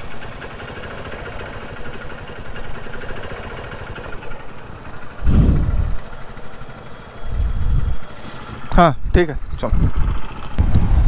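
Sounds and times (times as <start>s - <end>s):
motorcycle engine idling: 0.0s - 11.0s
loud low rumble: 5.1s - 6.6s.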